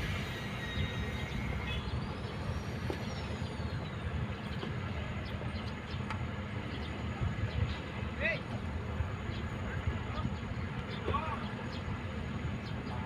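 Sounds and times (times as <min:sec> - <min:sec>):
faint high whine: 0:00.0 - 0:05.6
excavator diesel engine rumbling: 0:00.0 - 0:13.0.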